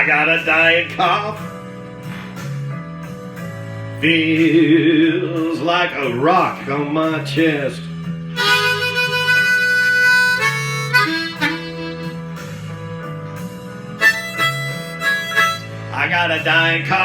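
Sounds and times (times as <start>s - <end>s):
blues harmonica: 0.0s - 5.6s, 7.2s - 17.0s
guitar bass line: 0.0s - 17.0s
person singing: 4.0s - 6.0s.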